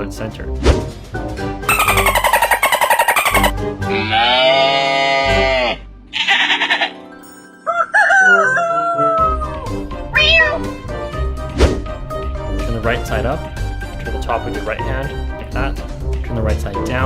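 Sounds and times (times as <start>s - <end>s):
background music: 0.0s - 17.0s
comic sound effects sliding in pitch: 1.7s - 3.5s.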